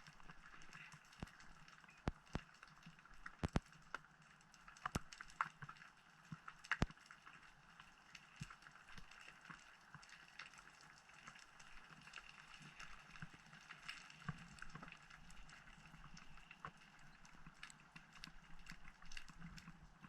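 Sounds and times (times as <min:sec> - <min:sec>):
small clicks and crackles: 0:00.0 - 0:20.0.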